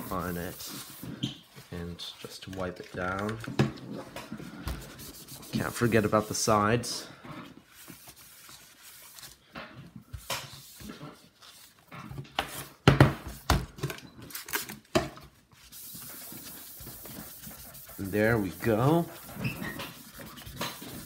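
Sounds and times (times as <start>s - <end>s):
cloth wiping laptop case: 0.0s - 2.9s, 4.5s - 6.6s, 15.6s - 21.0s.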